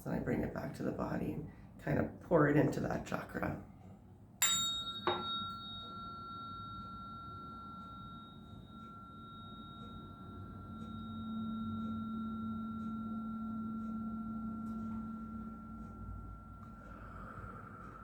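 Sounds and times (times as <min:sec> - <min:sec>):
lower steady tone: 0:04.4 - 0:18.0
tuning fork ringing: 0:04.4 - 0:18.0.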